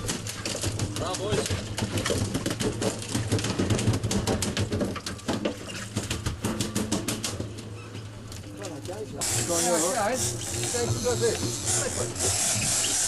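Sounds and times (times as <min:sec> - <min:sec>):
rapid clicking and knocking: 0:00.0 - 0:07.5.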